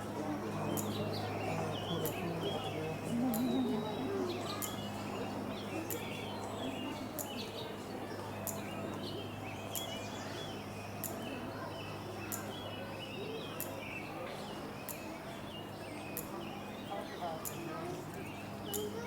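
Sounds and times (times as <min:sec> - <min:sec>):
low background hum: 0:00.0 - 0:19.0
small birds chirping: 0:00.2 - 0:19.0.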